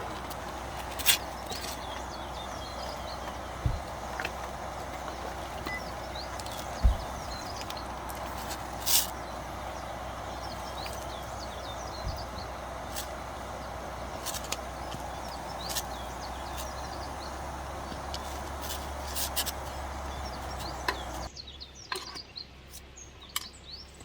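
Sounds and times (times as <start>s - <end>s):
river flowing: 0.0s - 21.3s
high bird chirps: 0.0s - 24.0s
low thump: 3.6s - 4.0s, 6.8s - 7.6s.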